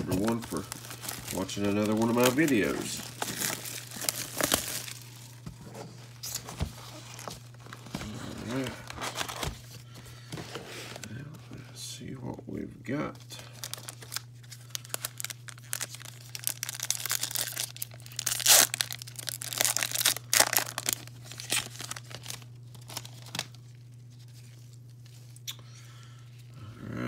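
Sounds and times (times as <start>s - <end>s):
foil wrapper tearing and crinkling: 0.0s - 5.4s, 13.4s - 25.4s
steady low hum: 0.0s - 27.0s.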